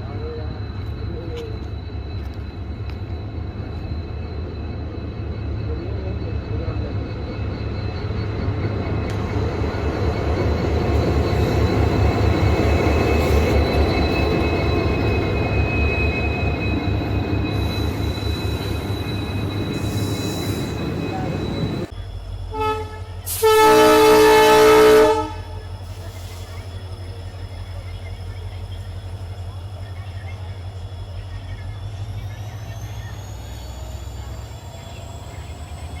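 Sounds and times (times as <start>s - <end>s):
train rumbling: 0.0s - 36.0s
train horn: 22.5s - 25.7s.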